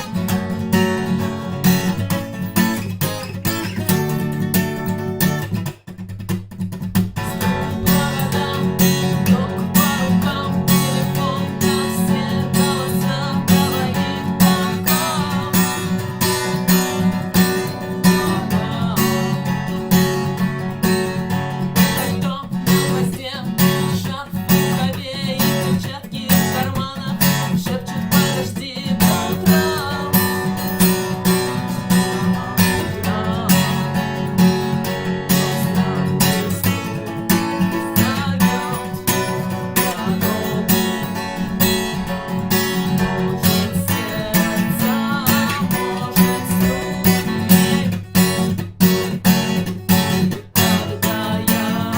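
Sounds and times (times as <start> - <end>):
acoustic guitar strumming: 0.0 - 51.9
percussive knocks on guitar strings: 45.5 - 47.7.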